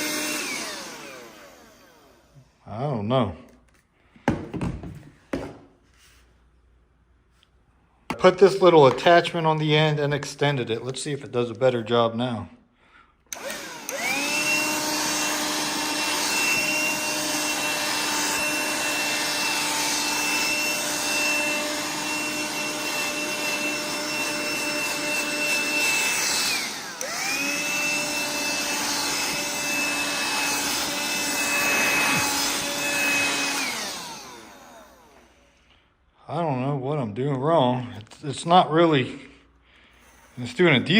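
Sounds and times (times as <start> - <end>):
handheld vacuum whining: 0.0 - 3.1, 13.2 - 36.0, 37.6 - 40.9.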